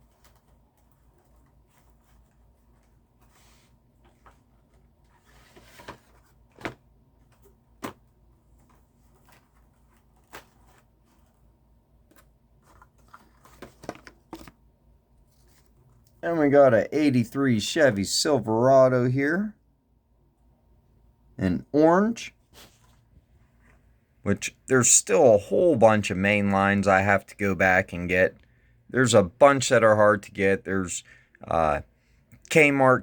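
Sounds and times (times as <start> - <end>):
packaging rustle: 0.0 - 14.6
faint low hum: 0.0 - 33.0.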